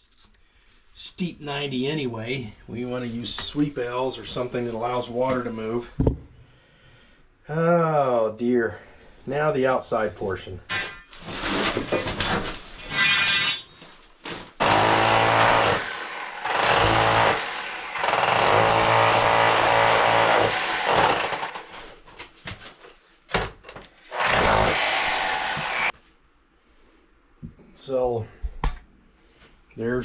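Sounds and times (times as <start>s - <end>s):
handheld power tool running: 14.6s - 21.8s, 24.1s - 25.9s.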